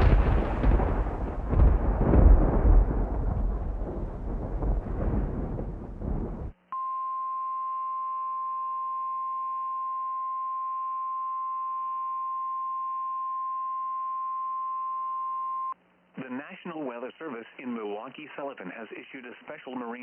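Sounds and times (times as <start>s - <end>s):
loud rumbling noise: 0.0s - 6.6s.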